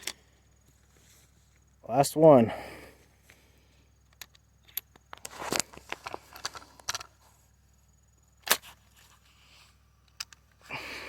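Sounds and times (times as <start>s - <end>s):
shotgun clicks and rattles: 4.0s - 7.2s, 10.0s - 10.6s.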